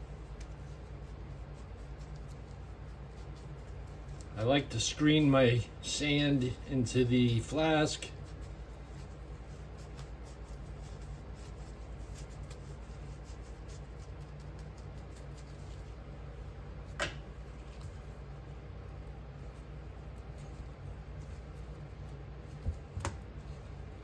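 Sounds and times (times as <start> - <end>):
sand sifting through a screen: 0.0 - 16.3
steady low hum: 0.0 - 24.0.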